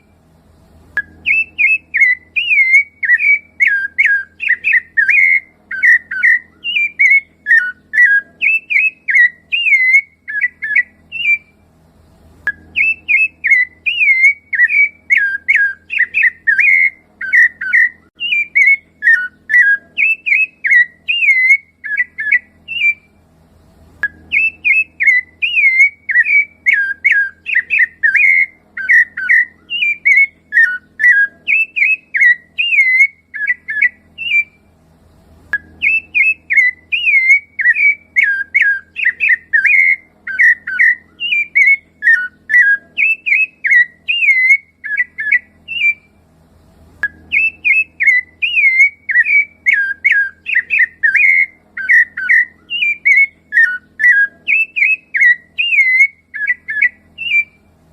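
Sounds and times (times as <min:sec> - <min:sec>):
thrush singing fluting phrases: 0:01.0 - 0:11.7, 0:12.4 - 0:23.3, 0:24.0 - 0:34.8, 0:35.6 - 0:46.2, 0:47.0 - 0:57.8.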